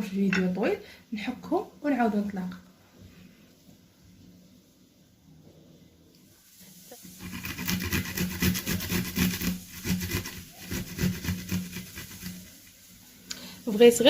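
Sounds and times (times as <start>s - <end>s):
vegetables grated on a grater: 7.1s - 12.7s.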